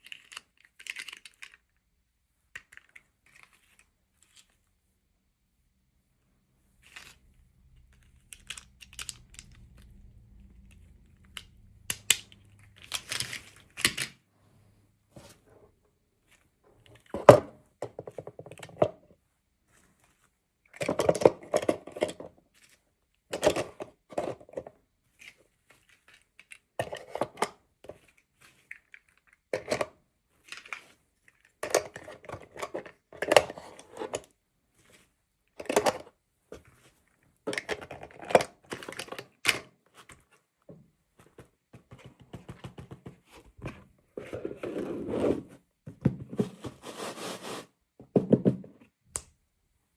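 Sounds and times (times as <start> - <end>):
plastic packaging crinkling and clicking: 0.0 - 1.8, 7.8 - 9.9.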